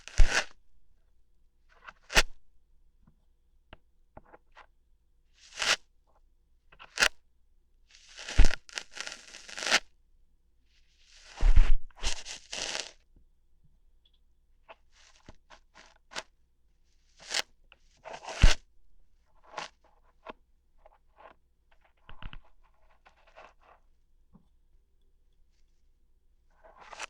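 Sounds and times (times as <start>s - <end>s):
ear hair plucking crackles: 12.4s - 12.9s.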